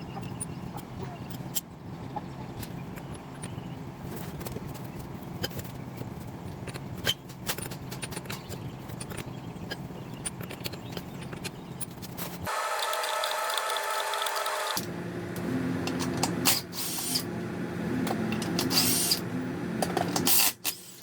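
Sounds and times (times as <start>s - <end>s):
steady low hum: 14.7s - 20.4s.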